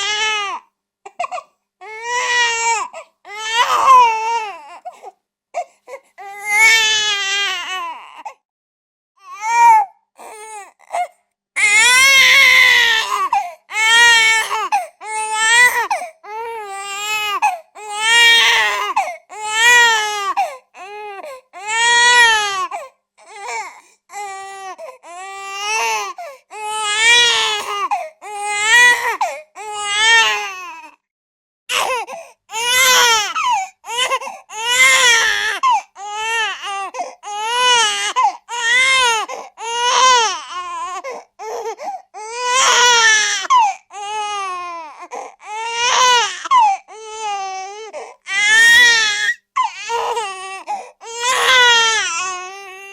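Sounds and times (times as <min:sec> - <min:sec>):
infant crying: 0:00.0 - 0:08.4, 0:09.2 - 0:31.0, 0:31.7 - 0:52.9.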